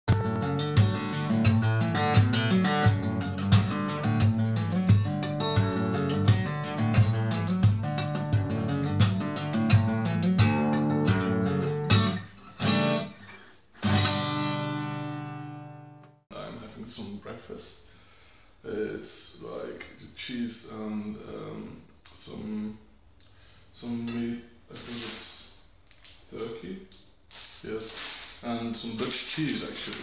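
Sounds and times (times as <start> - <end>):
acoustic guitar music: 0.1 - 16.2.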